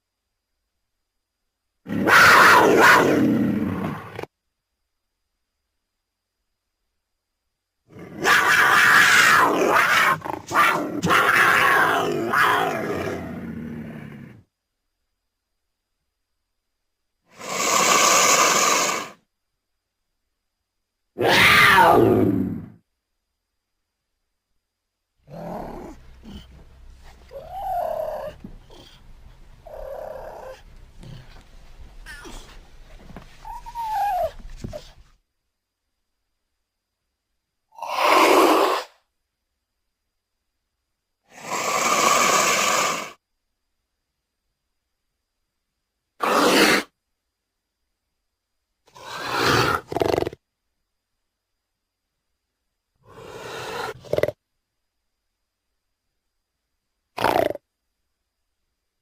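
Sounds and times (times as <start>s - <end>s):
cougar hissing: 7.9s - 14.4s, 17.3s - 19.2s, 25.2s - 35.1s, 37.8s - 39.0s, 41.3s - 43.2s, 46.2s - 46.9s, 48.9s - 50.4s, 53.0s - 54.4s, 57.2s - 57.6s
cougar call sliding down: 46.2s - 46.9s.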